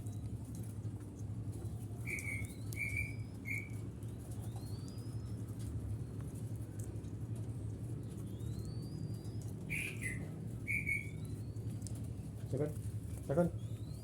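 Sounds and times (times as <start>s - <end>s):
small bird calls: 2.0s - 3.8s, 8.4s - 11.7s.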